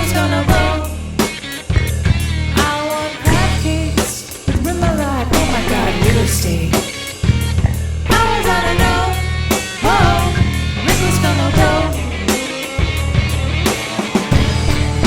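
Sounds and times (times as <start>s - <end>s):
person singing: 0.0s - 1.0s, 2.6s - 7.0s, 9.8s - 12.8s
drum kit: 0.0s - 15.0s
punk rock band playing: 0.0s - 15.0s.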